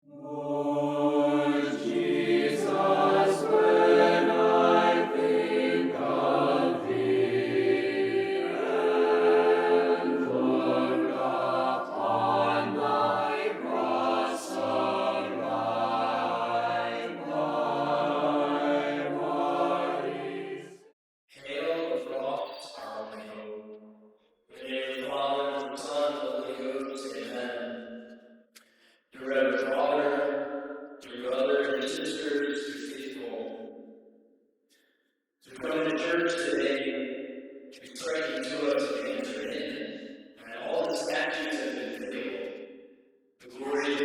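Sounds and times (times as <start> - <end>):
choir singing chant: 0.0 - 21.0, 24.6 - 27.8, 37.8 - 42.6, 43.4 - 44.0.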